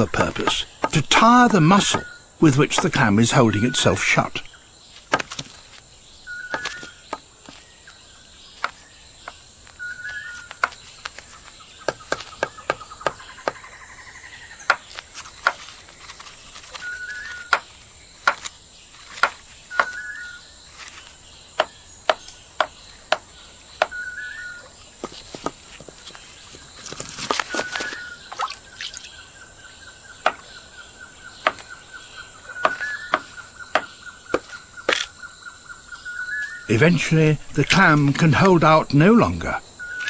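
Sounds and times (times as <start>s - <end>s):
monkey pounding a shell: 0.0s - 4.0s, 5.1s - 5.5s, 10.5s - 13.8s, 14.6s - 15.8s, 17.4s - 20.1s, 21.6s - 24.1s, 30.2s - 30.6s, 31.4s - 35.1s
trilling bird call: 0.0s - 5.0s, 6.2s - 24.8s, 27.4s - 40.0s.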